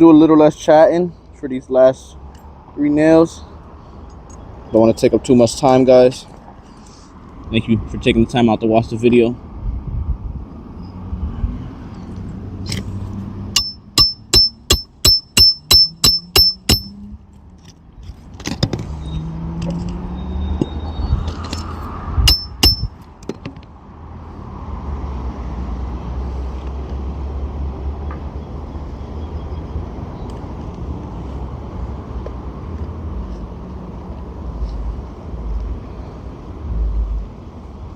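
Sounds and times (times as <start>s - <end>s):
hammer blows on metal tool: 13.6s - 17.0s, 22.3s - 23.0s.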